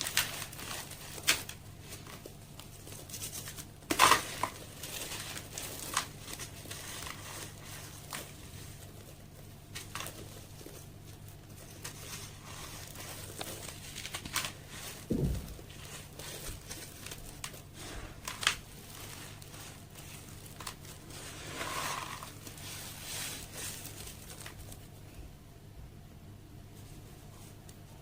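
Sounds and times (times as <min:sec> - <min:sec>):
slabs crumbling with crackles: 0:00.0 - 0:24.8
low thud: 0:15.1 - 0:15.7.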